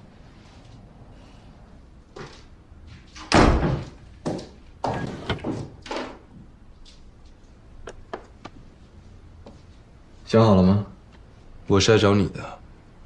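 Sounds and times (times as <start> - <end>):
door banging shut: 3.2 - 6.2
knocks and thuds: 3.3 - 6.1.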